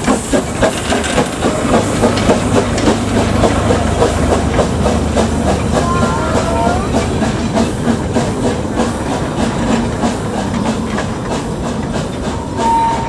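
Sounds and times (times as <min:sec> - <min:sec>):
hiss of steam: 0:00.0 - 0:13.0
steam locomotive exhaust beating: 0:00.0 - 0:13.0
short high tone: 0:05.8 - 0:07.1.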